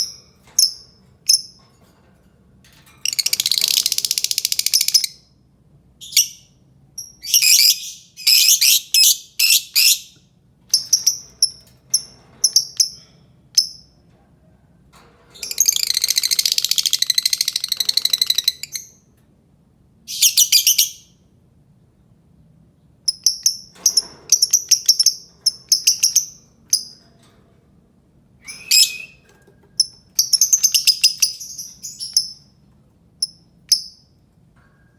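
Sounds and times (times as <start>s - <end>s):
lovebird chirping: 28.4s - 29.2s, 29.8s - 32.5s.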